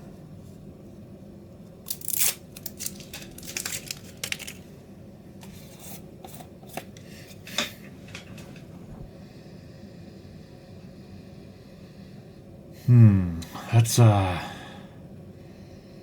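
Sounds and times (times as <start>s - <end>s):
container clicks and scrapes: 1.9s - 4.6s.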